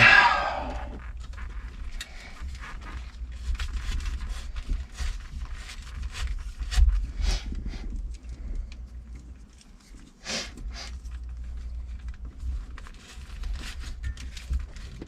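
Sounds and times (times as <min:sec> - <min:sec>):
low rumble: 0:00.0 - 0:01.0
small clicks taps and scrapes: 0:01.1 - 0:10.2, 0:10.9 - 0:15.0.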